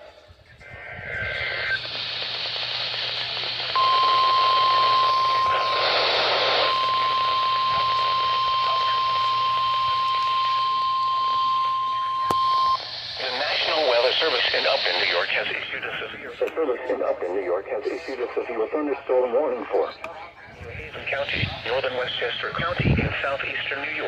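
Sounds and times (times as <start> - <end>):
radio static hiss: 0.0 - 24.0
data tones burst: 1.0 - 15.7
steady alarm tone: 3.8 - 14.0.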